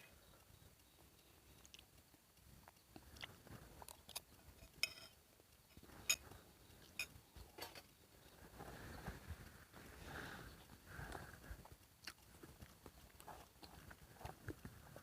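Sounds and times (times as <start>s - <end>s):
person chewing: 1.5s - 2.0s, 2.6s - 4.4s, 11.6s - 14.8s.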